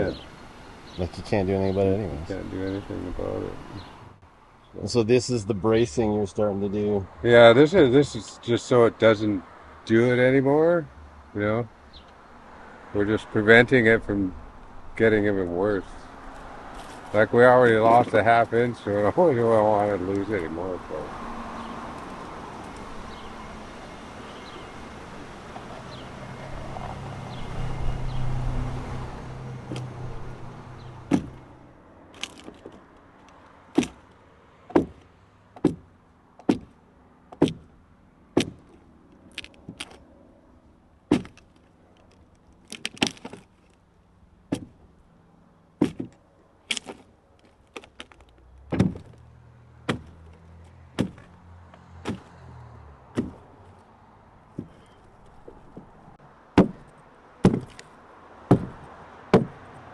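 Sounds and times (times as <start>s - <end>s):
hand tool striking wood: 31.1s - 31.4s, 33.8s - 34.0s, 34.7s - 35.0s, 36.4s - 36.7s, 37.3s - 37.6s, 38.4s - 38.8s, 44.5s - 44.8s, 45.8s - 47.0s, 47.8s - 49.2s, 49.9s - 50.2s, 51.0s - 51.3s, 52.0s - 52.3s, 53.2s - 53.4s, 56.6s - 57.8s, 58.5s - 59.6s.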